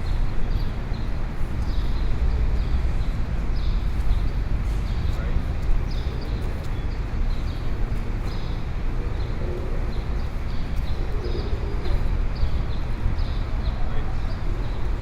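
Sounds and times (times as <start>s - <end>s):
low traffic rumble: 0.0s - 15.0s
street noise: 0.0s - 15.0s.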